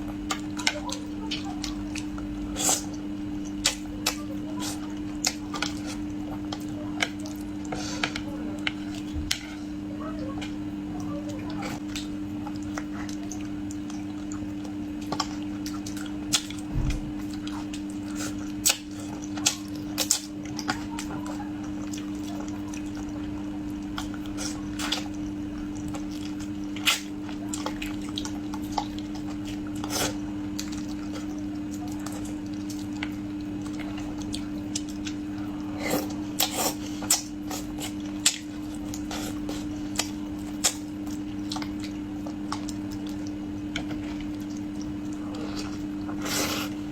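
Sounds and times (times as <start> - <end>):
steady low hum: 0.0 - 46.9
wet chewing and lip smacking: 11.5 - 46.8.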